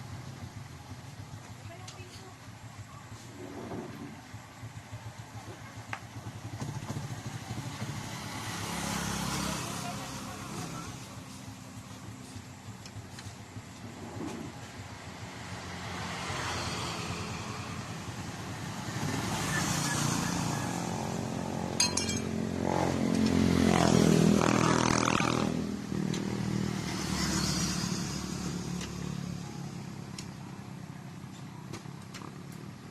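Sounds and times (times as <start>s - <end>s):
motorcycle engine running: 4.1s - 15.0s, 17.3s - 31.1s.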